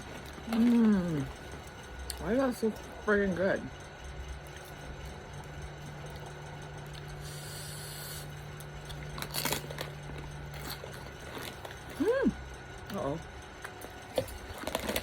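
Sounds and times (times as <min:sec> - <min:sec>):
steady low hum: 0:00.0 - 0:15.0
tortilla chip crunching: 0:08.2 - 0:13.0, 0:13.6 - 0:15.0.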